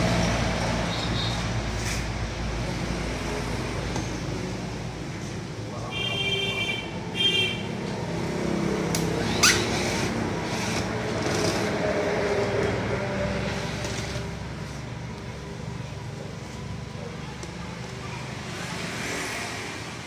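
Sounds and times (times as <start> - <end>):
road traffic: 0.0 - 20.0
sharp rising squeak: 9.2 - 10.0.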